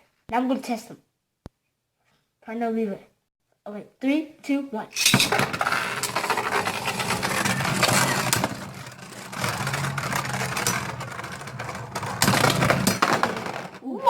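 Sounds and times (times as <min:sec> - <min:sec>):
spinning tops whirring: 0:05.0 - 0:13.8.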